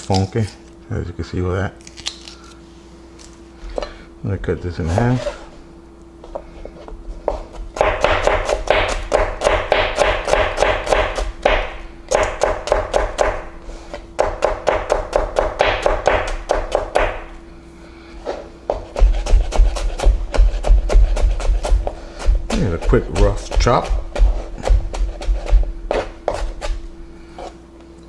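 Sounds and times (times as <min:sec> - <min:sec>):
knife chopping on cutting board: 0:07.2 - 0:17.4, 0:18.7 - 0:27.6.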